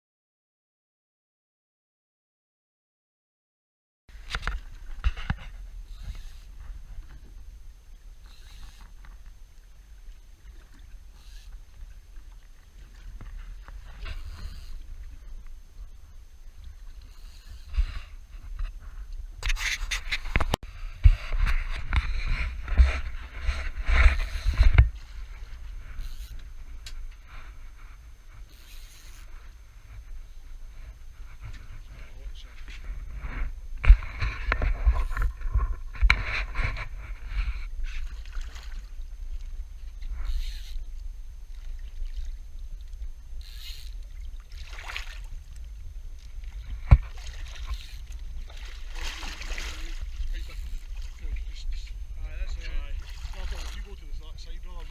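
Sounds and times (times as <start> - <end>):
water sloshing around boat: 4.1 - 54.9
wind rumbling on microphone: 4.1 - 54.9
water splashing: 37.9 - 40.8, 41.4 - 54.9.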